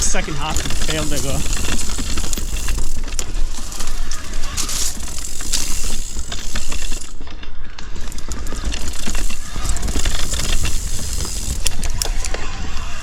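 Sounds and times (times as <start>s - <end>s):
bike clicking and rattling: 0.0s - 13.0s
bike tyres crunching over gravel: 0.0s - 13.0s.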